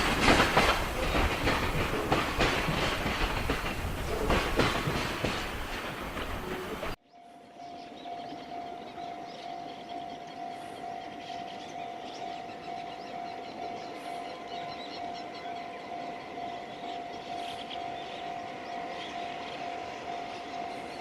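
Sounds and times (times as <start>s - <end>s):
level crossing alarm ringing: 6.5s - 21.0s.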